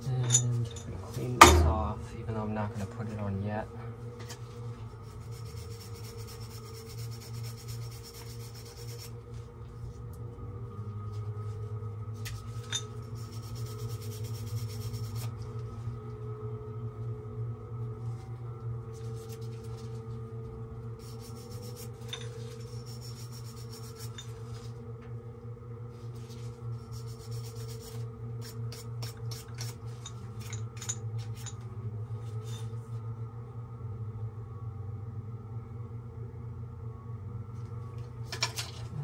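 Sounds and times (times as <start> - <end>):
metal pipe fittings scraping and clinking: 0.0 - 1.8, 12.2 - 13.6, 21.2 - 24.6, 27.6 - 31.6, 38.3 - 38.9
steady low hum: 0.0 - 39.0.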